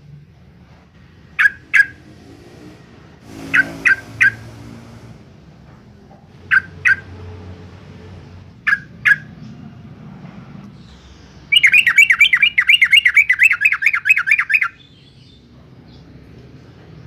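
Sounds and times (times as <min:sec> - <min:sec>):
bird giving sharp call notes: 0:01.4 - 0:02.0, 0:03.3 - 0:04.6, 0:11.5 - 0:14.8.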